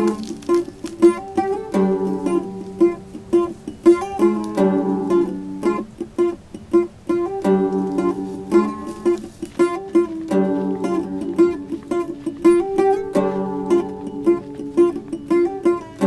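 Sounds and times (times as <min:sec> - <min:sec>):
plucked string instrument music: 0:00.0 - 0:16.0.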